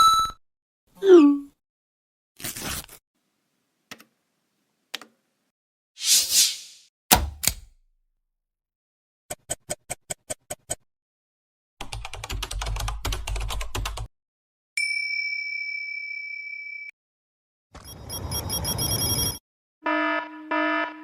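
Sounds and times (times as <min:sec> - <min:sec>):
clicks: 0:07.1 - 0:07.7
bell-like ding: 0:14.8 - 0:16.9.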